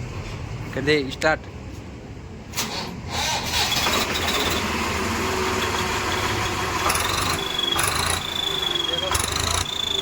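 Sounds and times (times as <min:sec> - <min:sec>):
tractor diesel engine running: 0:03.4 - 0:10.0
thin high whistle: 0:07.2 - 0:10.0.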